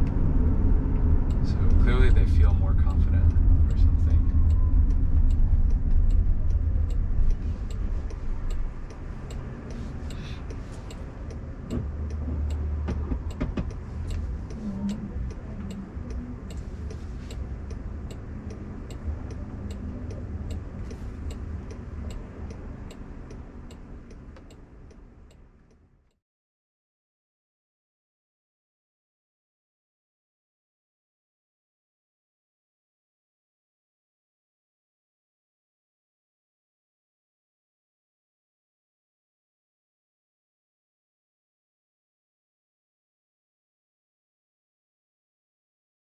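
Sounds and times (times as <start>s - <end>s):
road and tyre rumble in car: 0.0s - 26.2s
faint regular ticking: 0.9s - 25.8s.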